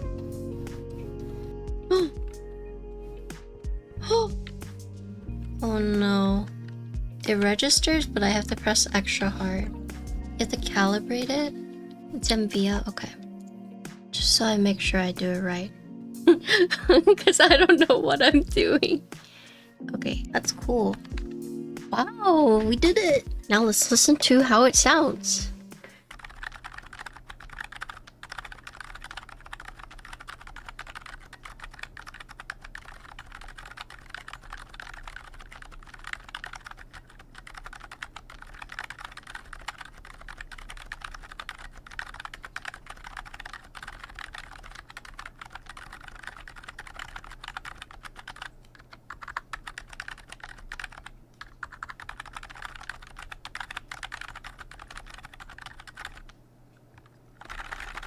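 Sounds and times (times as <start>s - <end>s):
fast keyboard typing: 5.6s - 11.6s, 12.2s - 13.2s, 14.2s - 15.7s, 16.4s - 21.4s, 22.5s - 56.4s, 57.0s - 58.0s
faint low electrical hum: 14.2s - 21.1s, 21.9s - 58.0s.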